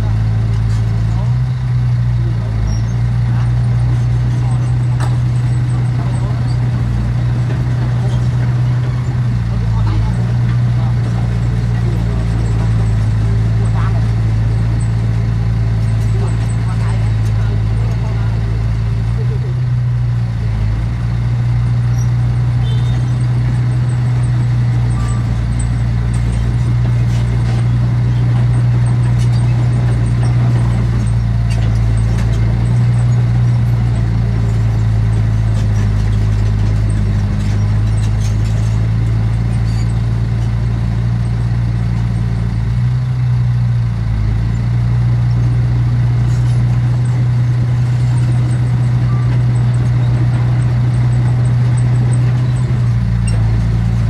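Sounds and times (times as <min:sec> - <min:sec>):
heavy diesel engine droning: 0:00.0 - 0:54.0.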